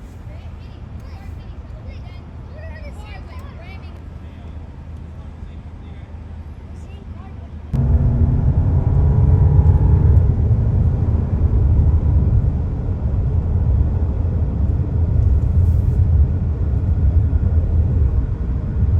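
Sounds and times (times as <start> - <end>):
loud low rumble: 7.8 - 18.9.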